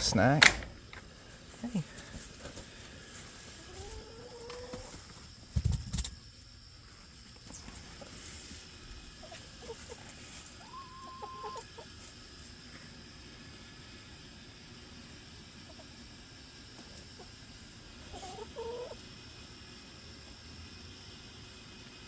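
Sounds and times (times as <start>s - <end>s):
hens clucking: 3.2s - 5.1s, 9.1s - 12.0s, 15.6s - 19.1s.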